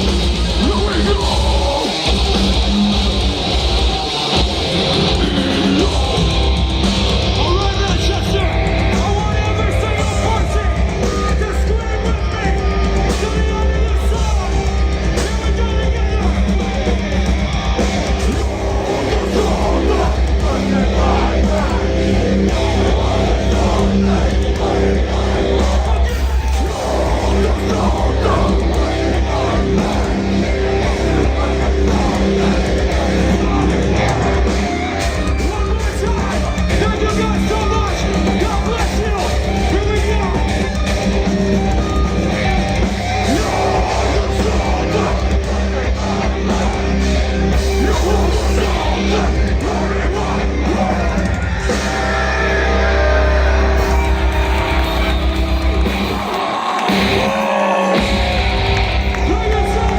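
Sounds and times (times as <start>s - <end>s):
distorted electric guitars: 0.0s - 59.9s
drums: 0.0s - 59.9s.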